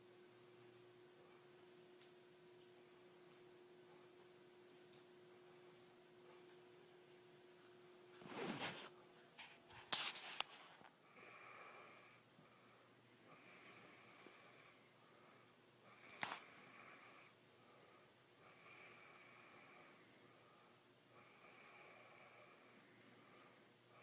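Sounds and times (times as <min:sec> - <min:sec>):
faint wheezy snoring: 0:11.0 - 0:24.0.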